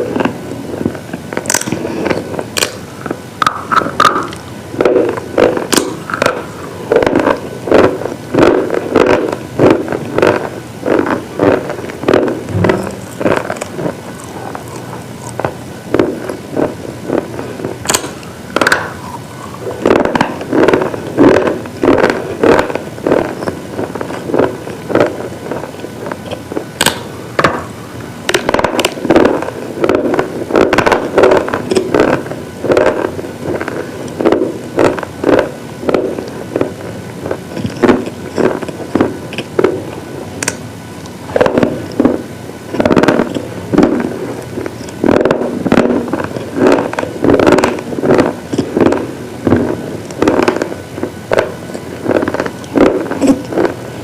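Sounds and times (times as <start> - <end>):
slate pieces crunching: 1.4 - 2.8, 3.4 - 23.3, 26.2 - 27.7.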